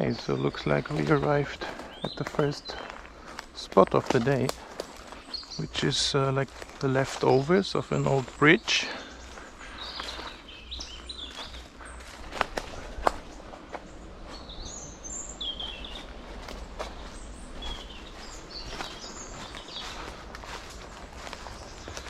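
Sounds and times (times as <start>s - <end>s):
footsteps on forest floor: 0.0s - 22.0s
small birds chirping: 0.0s - 22.0s
twigs snapping: 1.6s - 5.2s, 11.3s - 13.3s.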